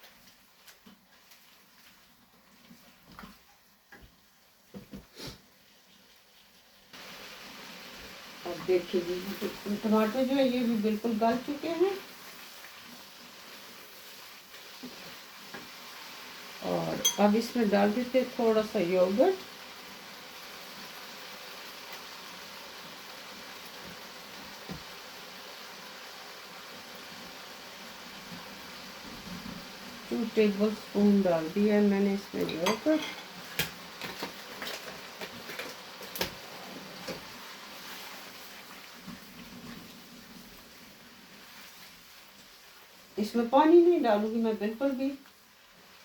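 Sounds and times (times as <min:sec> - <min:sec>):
food sizzling in pan: 0:00.0 - 0:46.0
taps and scrapes in cooking pan: 0:32.4 - 0:36.4.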